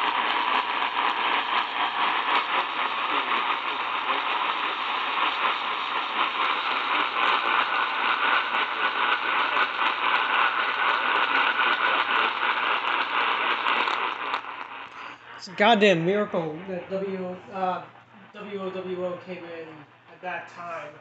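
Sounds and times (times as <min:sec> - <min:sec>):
radio static hiss and crackle: 0:00.0 - 0:21.0.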